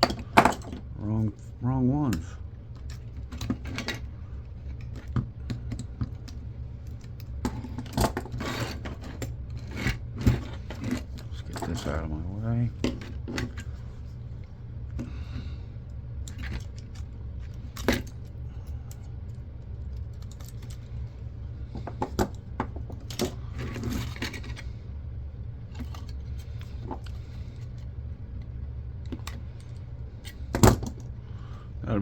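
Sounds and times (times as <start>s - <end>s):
steady low hum: 0.0s - 32.0s
small parts clicking and clinking: 16.2s - 24.7s.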